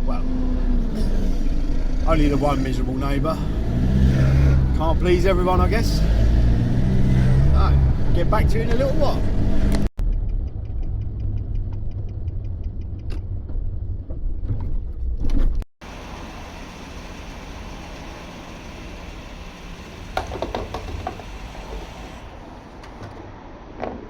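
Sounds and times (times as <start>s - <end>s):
car road and engine rumble: 0.0s - 24.0s
knocks: 20.2s - 21.2s.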